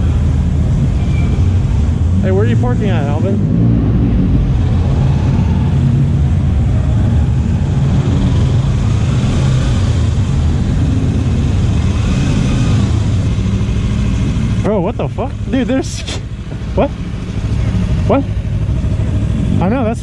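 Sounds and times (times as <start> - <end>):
motorcycle engine running: 0.0 - 20.0.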